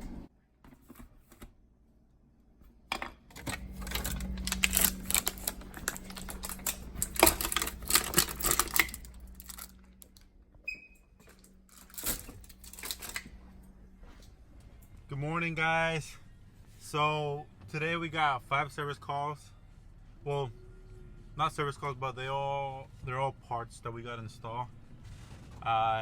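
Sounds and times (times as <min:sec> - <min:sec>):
low steady hum: 0:00.0 - 0:26.0
small hard objects clattering: 0:03.4 - 0:10.1.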